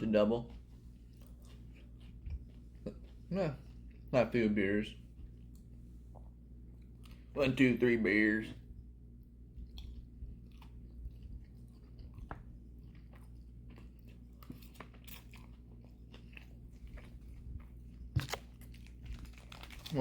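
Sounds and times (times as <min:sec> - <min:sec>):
steady low hum: 0:00.0 - 0:20.0
person chewing food: 0:00.4 - 0:04.2, 0:04.9 - 0:07.4, 0:09.1 - 0:20.0
small crunches: 0:09.7 - 0:20.0.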